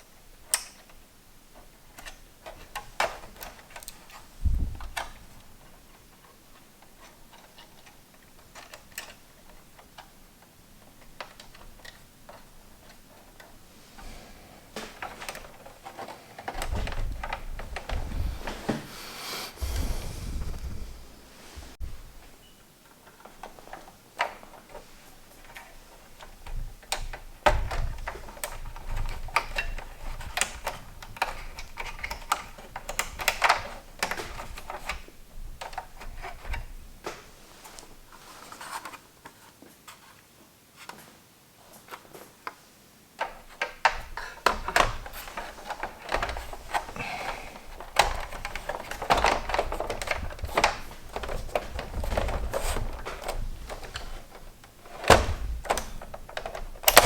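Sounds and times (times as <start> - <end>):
plastic and metal parts clicking: 0.0 - 1.0, 1.6 - 13.6, 14.8 - 18.2, 22.8 - 36.8, 43.2 - 57.0.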